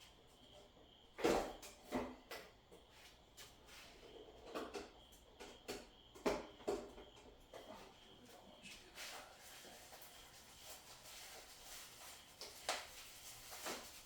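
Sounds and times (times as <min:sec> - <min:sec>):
objects knocking and clunking: 0:04.2 - 0:07.9.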